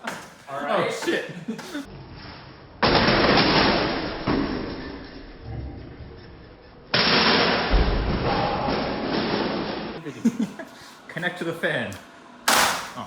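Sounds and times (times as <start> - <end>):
loud crashes with rattle: 2.8 - 5.0, 6.9 - 10.0, 12.5 - 13.0.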